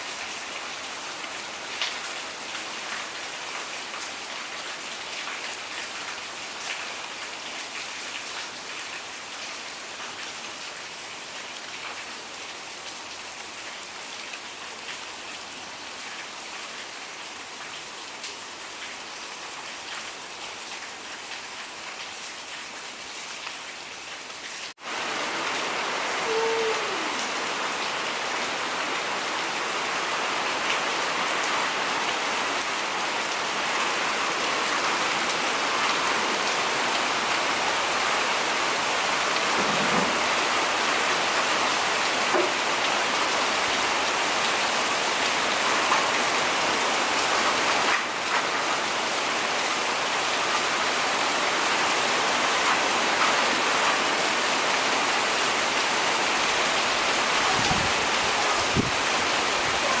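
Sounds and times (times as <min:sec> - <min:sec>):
steady rain falling: 0:00.0 - 1:00.0
falling pitched note: 0:26.2 - 0:27.3.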